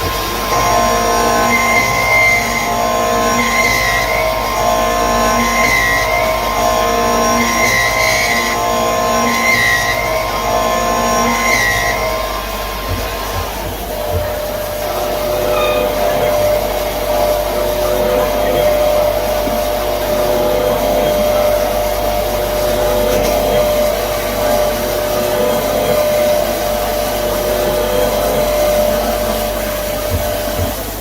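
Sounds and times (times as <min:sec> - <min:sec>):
milling machine whirring: 0:00.0 - 0:31.0.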